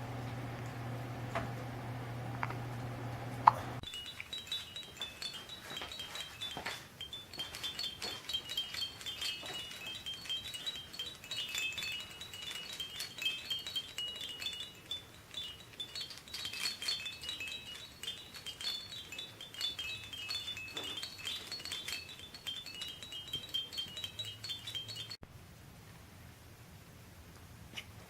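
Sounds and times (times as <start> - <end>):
high chimes tinkling: 3.8 - 25.2.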